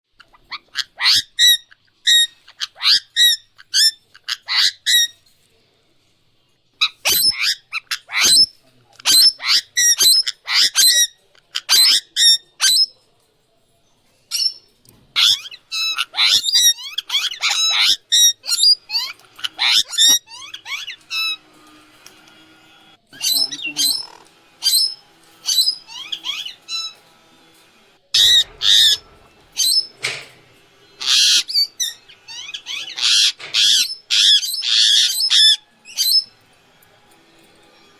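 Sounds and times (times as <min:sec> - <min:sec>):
parrot squawking: 0:00.2 - 0:05.1, 0:06.8 - 0:12.9, 0:15.2 - 0:21.5, 0:23.1 - 0:27.1, 0:28.1 - 0:36.4.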